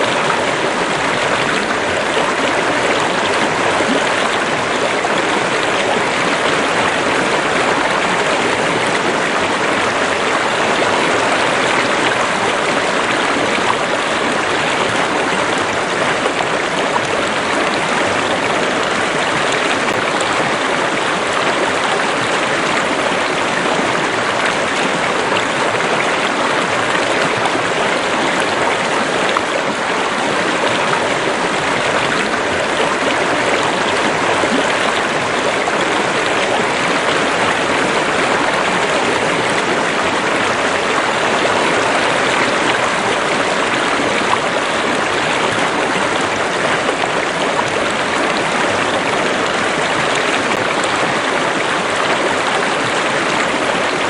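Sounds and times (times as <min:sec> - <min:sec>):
stream running over rocks: 0:00.0 - 0:54.0.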